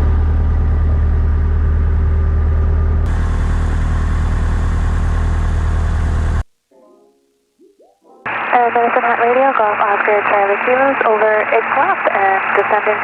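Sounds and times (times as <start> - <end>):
light airplane engine droning: 0.0 - 6.4.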